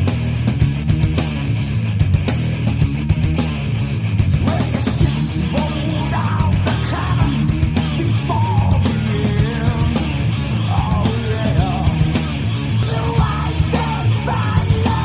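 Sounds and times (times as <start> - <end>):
grunge rock band playing: 0.0 - 15.0
person singing in a yelling style: 4.3 - 12.2, 12.8 - 15.0.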